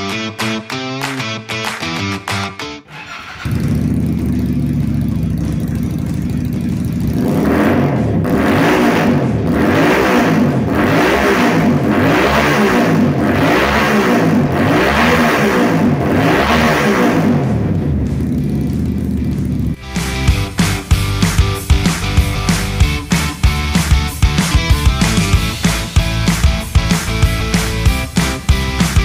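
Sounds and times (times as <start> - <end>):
motorcycle engine revving: 2.9 - 29.0.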